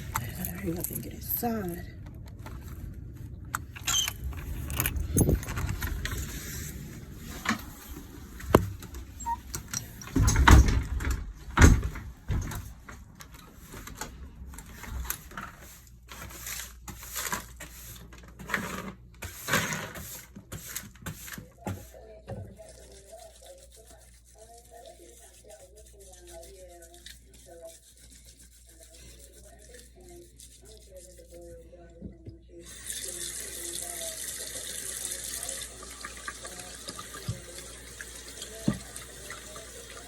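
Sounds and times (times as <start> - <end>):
door opening and shutting: 3.7 - 6.2, 8.6 - 12.7.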